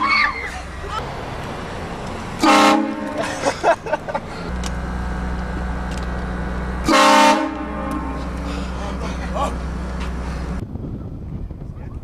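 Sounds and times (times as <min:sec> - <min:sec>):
car engine humming: 0:00.0 - 0:11.7
train horn blasts: 0:02.4 - 0:03.2, 0:06.4 - 0:08.5.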